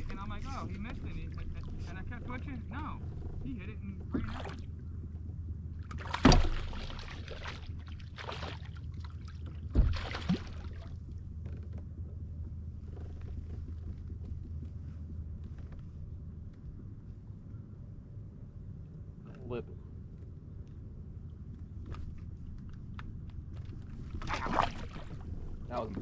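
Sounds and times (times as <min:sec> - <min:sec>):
steady low rumble: 0:00.0 - 0:26.0
water splash: 0:05.9 - 0:08.7, 0:09.8 - 0:10.9, 0:24.2 - 0:25.2.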